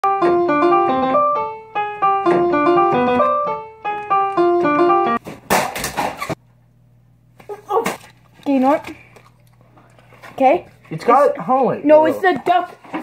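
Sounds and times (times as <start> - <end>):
piano tune: 0.0 - 5.2.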